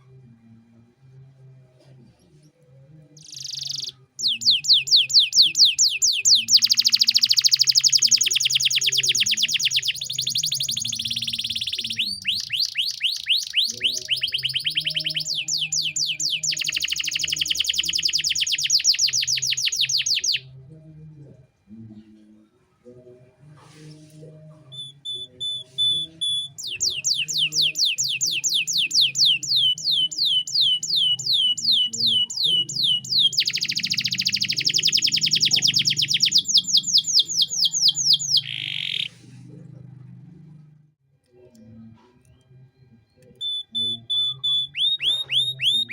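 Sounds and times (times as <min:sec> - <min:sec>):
canary singing trills: 0:03.1 - 0:20.5, 0:24.7 - 0:39.2, 0:43.3 - 0:45.9.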